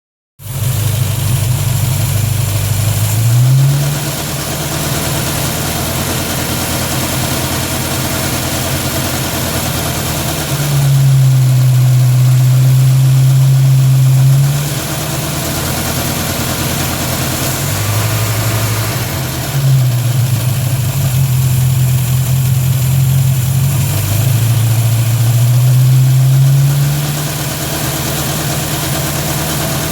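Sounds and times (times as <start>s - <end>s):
car engine running: 0.4s - 29.9s
low hum rising in pitch: 2.8s - 21.4s.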